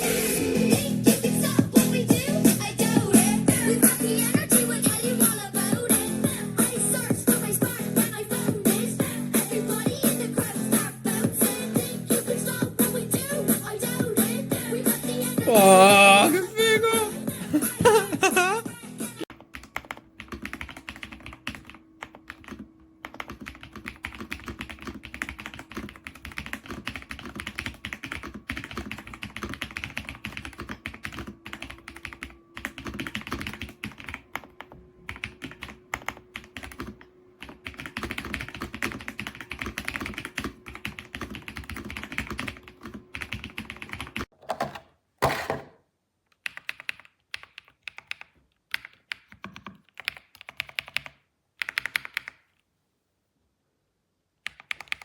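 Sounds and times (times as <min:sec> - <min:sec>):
mechanical keyboard typing: 0:19.3 - 0:44.3, 0:46.3 - 0:52.5, 0:54.4 - 0:55.0.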